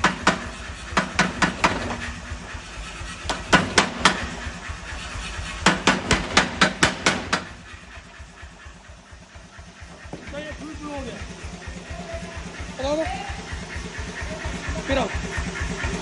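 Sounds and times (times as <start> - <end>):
air hammer striking: 0.0 - 8.2, 9.8 - 10.8
motor and compressor hum: 0.0 - 16.0.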